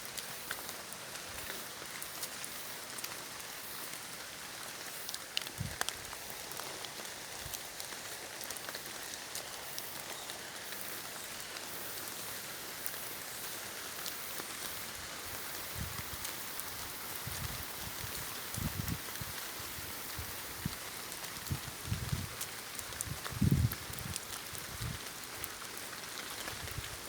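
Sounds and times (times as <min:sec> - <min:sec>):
rain pattering in a forest: 0:00.0 - 0:27.0
sharp water drips: 0:00.1 - 0:27.0.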